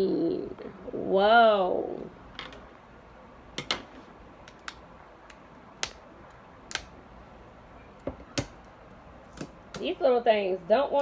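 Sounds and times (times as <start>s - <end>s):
plastic packaging clicks and taps: 4.4s - 6.9s, 8.0s - 9.9s.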